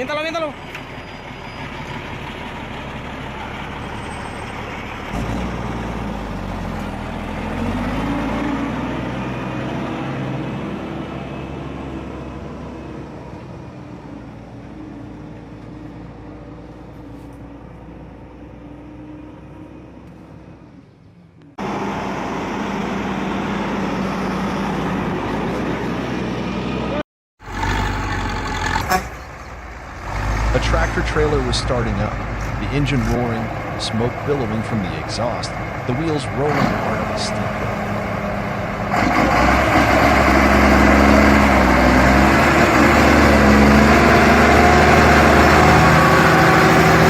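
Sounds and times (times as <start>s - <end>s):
truck engine running steady: 0.0s - 7.5s
truck diesel engine revving: 0.0s - 16.7s, 21.5s - 47.0s.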